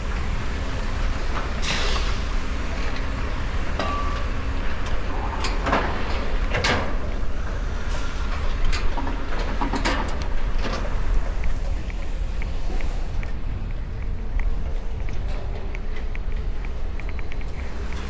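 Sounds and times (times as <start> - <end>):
metallic clicks and knocks: 3.8 - 7.1.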